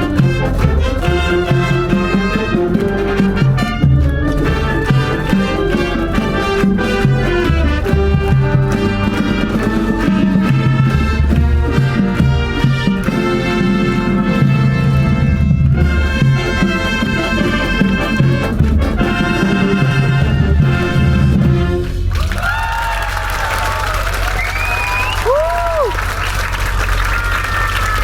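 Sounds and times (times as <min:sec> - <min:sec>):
wind band playing: 0:00.0 - 0:22.4.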